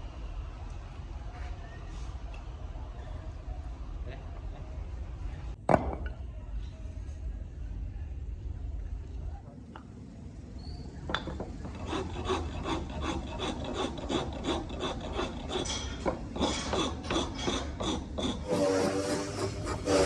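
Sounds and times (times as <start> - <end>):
rasp scraping across wood: 11.6 - 20.0.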